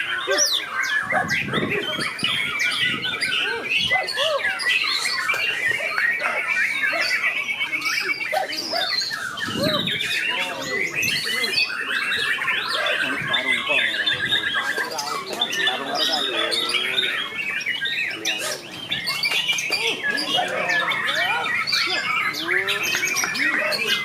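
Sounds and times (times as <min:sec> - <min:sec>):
songbirds singing in chorus: 0:00.0 - 0:24.0.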